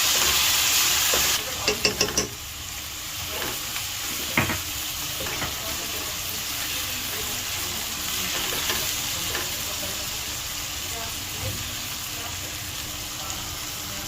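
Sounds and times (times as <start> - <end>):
okra sizzling in a pan: 0.0 - 14.0
spoon knocking against pan: 1.6 - 2.4.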